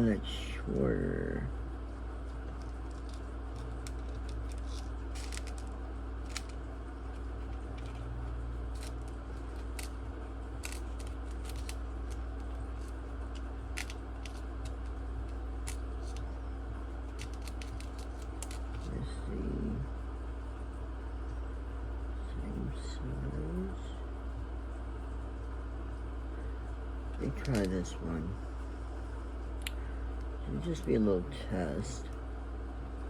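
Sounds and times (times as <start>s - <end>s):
steady low hum: 0.0s - 33.0s
tiny metal screws clicking: 2.5s - 6.6s, 10.6s - 14.9s.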